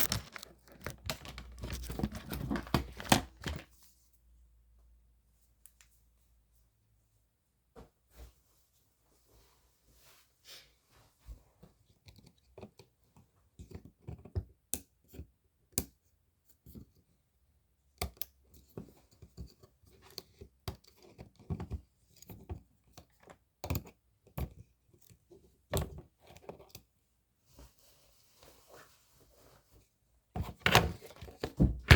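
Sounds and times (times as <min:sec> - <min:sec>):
small objects clicking and scraping: 0:00.0 - 0:02.9.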